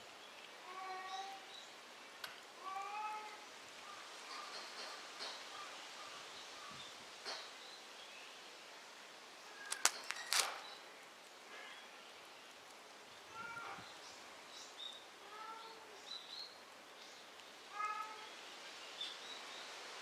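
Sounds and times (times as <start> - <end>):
sharp snaps: 9.6 - 10.7.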